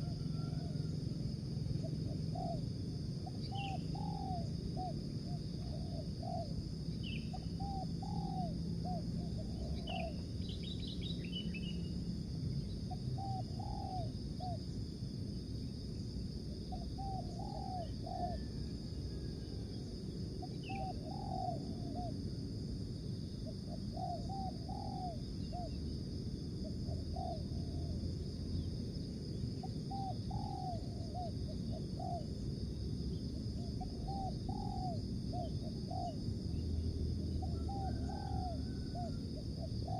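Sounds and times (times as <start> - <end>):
dove cooing: 0.0 - 0.8, 1.8 - 6.5, 7.1 - 10.2, 12.9 - 14.6, 16.7 - 19.3, 20.4 - 22.2, 23.4 - 25.8, 26.6 - 28.0, 29.6 - 32.3, 33.6 - 36.2, 37.4 - 39.9
steady background hiss: 0.0 - 39.9
small birds chirping: 3.2 - 5.0.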